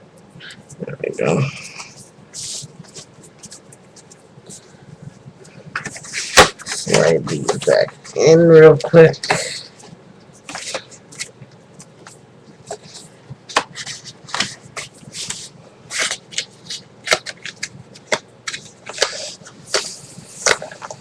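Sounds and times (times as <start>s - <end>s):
paper sheets rustling in envelope: 12.7s - 21.0s.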